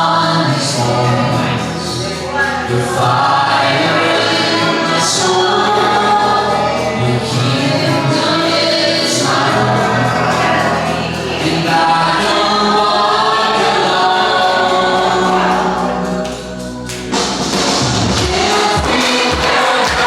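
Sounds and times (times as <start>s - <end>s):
choir singing with backing music: 0.0s - 20.0s
low thumping beat: 15.3s - 20.0s.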